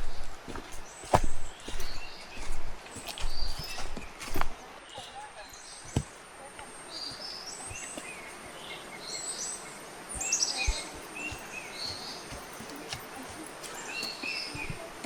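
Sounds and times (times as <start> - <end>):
soft low thumps: 0.0 - 4.6
birds chirping and whistling: 0.0 - 6.1, 6.7 - 15.0.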